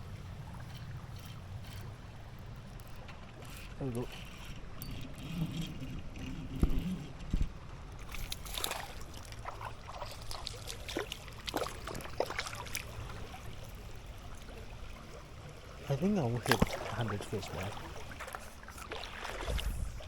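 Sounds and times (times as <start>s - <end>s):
water sloshing and trickling: 0.0s - 20.0s
water splashes: 7.9s - 20.0s.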